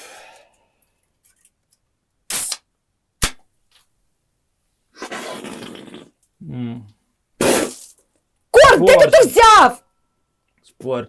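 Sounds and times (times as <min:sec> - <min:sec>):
short hiss: 0:02.3 - 0:02.6, 0:07.4 - 0:08.0
sharp crack: 0:02.3 - 0:03.5.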